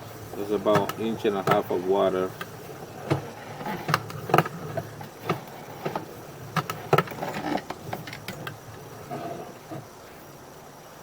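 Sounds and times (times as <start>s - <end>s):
steady low hum: 0.0s - 11.0s
sharp knocks and clicks: 0.6s - 1.8s.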